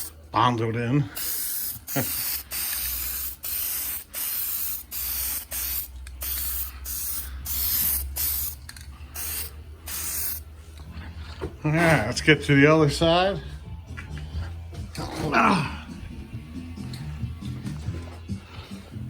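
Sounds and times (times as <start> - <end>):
aerosol can spraying bursts: 1.2 - 10.4.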